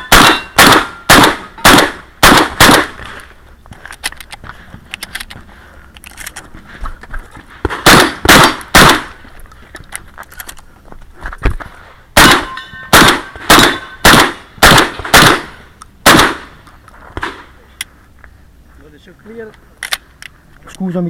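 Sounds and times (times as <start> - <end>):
shotgun shots: 0.0 - 3.1, 7.6 - 9.2, 12.2 - 16.6
metallic ringing: 12.4 - 14.0.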